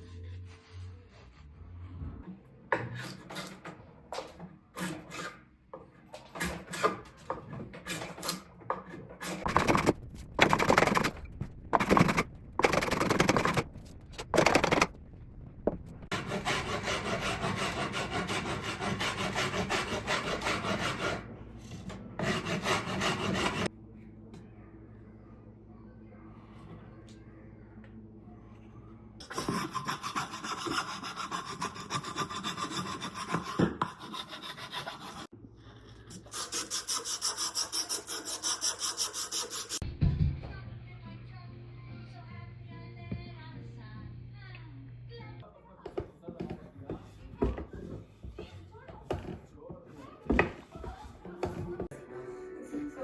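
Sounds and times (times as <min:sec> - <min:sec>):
file scraping wood: 0:04.7 - 0:05.5, 0:06.1 - 0:11.2, 0:11.8 - 0:13.7, 0:16.1 - 0:23.7, 0:29.2 - 0:35.3, 0:36.0 - 0:39.8.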